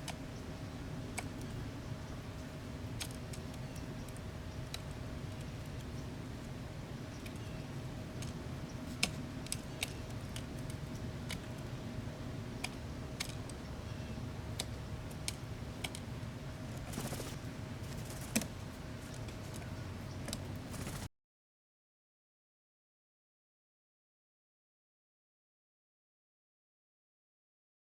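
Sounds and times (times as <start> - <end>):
steady low hum: 0.0 - 21.1.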